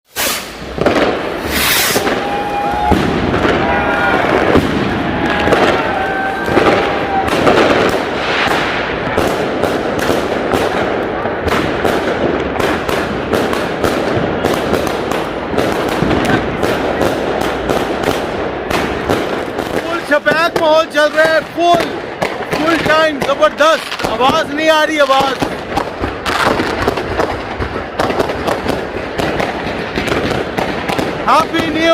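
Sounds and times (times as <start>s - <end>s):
fireworks bangs and crackles: 0.1s - 31.9s
crowd voices: 0.5s - 31.9s.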